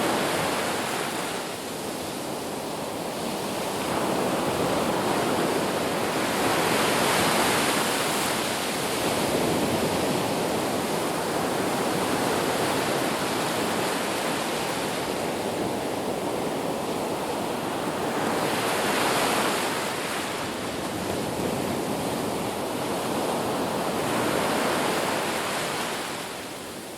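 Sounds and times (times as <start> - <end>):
ocean waves breaking on beach: 0.0 - 26.9.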